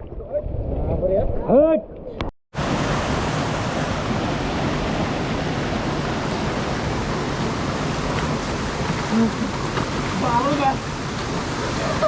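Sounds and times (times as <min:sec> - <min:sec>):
river water rushing: 0:02.6 - 0:12.0.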